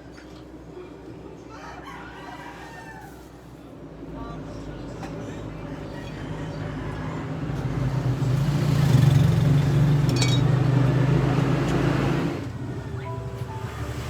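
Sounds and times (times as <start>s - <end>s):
vehicle engine humming: 4.2s - 14.0s.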